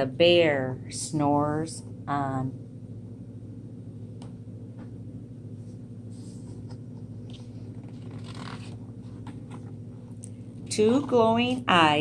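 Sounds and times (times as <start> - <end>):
steady low hum: 0.0 - 12.0
paper pages rustling and turning: 6.2 - 9.8.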